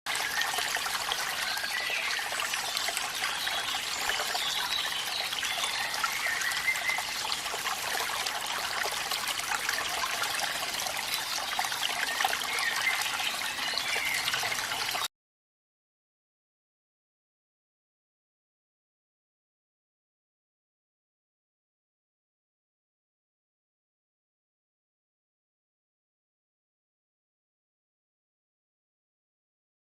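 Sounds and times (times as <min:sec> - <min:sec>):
water trickling: 0:00.1 - 0:15.1.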